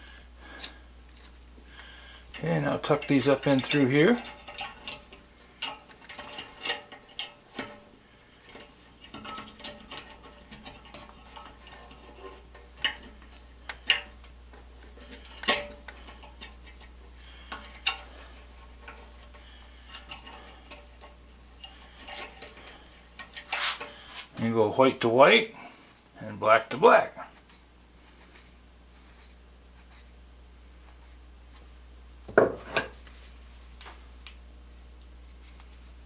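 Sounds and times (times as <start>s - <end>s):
wires and metal parts clicking: 0.4s - 24.5s.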